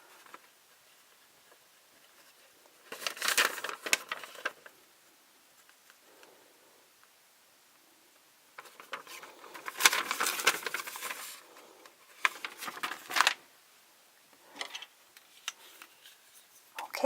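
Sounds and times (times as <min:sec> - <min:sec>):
packaging rustling: 0:01.5 - 0:04.8, 0:08.6 - 0:13.4.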